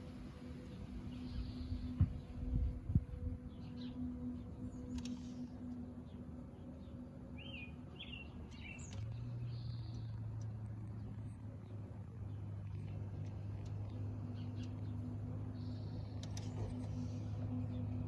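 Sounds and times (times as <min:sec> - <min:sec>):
steady low hum: 0:00.0 - 0:18.0
bird chirps: 0:00.6 - 0:11.1.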